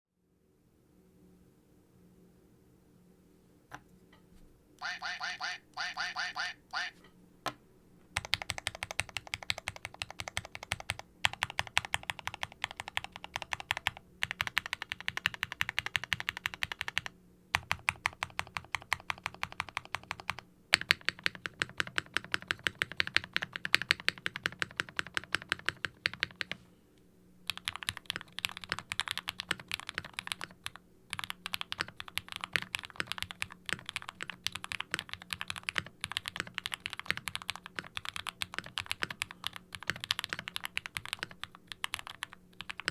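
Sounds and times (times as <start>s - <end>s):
fast typing on mechanical keyboard: 8.2s - 26.6s, 27.5s - 42.9s.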